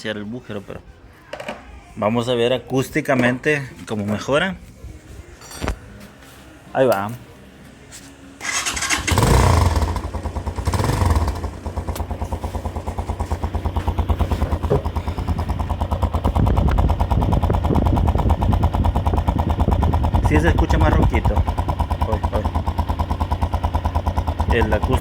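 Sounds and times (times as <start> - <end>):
motorcycle engine revving and idling: 8.4 - 25.0.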